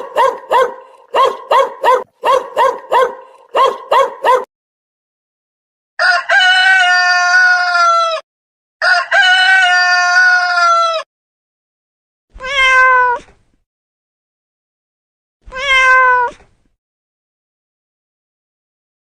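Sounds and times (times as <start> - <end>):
cat meow falling in pitch: 6.0 - 8.2, 8.9 - 11.1, 12.4 - 13.4, 15.5 - 16.5
long drawn-out animal call tone: 8.8 - 11.1.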